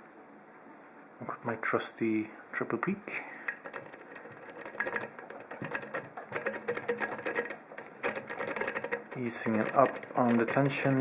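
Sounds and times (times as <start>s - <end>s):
lock pick raking padlock pins: 3.5s - 11.0s.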